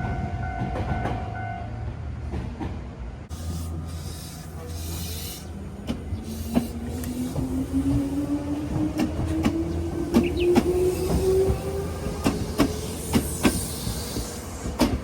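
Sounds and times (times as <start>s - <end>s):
electric train motor whine: 3.3s - 14.4s
wheels clicking on rails: 3.3s - 15.0s.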